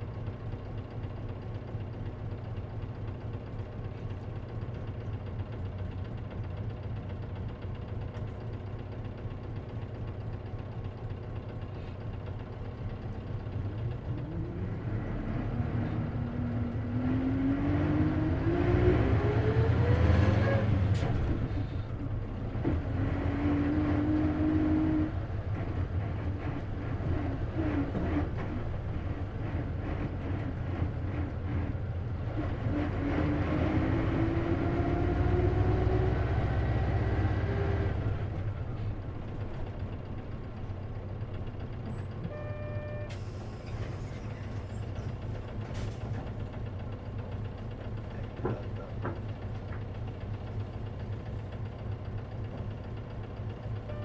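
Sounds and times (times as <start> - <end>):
bus engine whining: 11.7 - 54.0
short electronic beep: 42.3 - 43.2.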